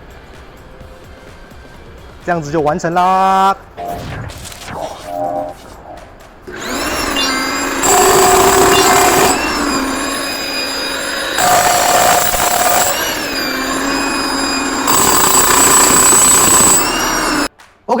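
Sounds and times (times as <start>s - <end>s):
demolition hammer chiselling: 6.5s - 17.5s.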